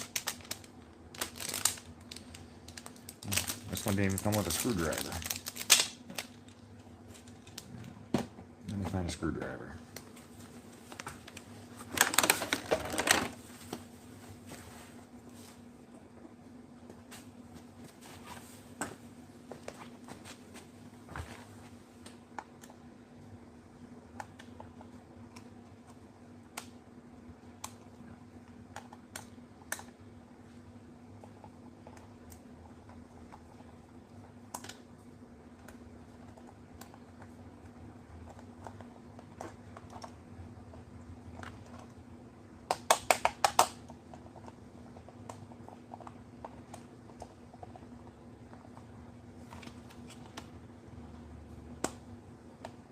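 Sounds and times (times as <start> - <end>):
faint steady hum: 0.0 - 52.9.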